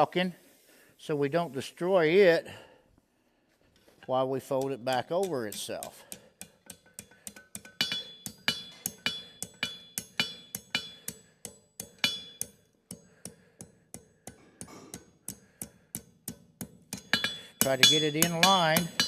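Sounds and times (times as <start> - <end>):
hammer ringing on anvil: 4.6 - 15.4, 16.9 - 19.0.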